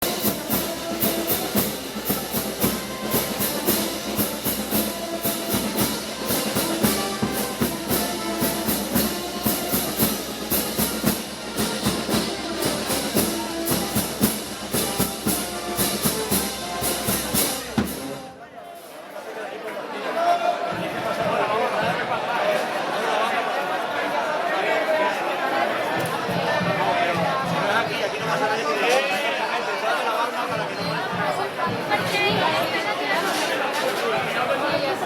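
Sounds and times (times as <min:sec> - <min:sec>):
live band held notes: 0:00.0 - 0:18.4
sharp percussion strokes: 0:00.0 - 0:18.4
drums: 0:00.0 - 0:18.9, 0:20.7 - 0:22.7, 0:25.5 - 0:28.6, 0:30.4 - 0:35.0.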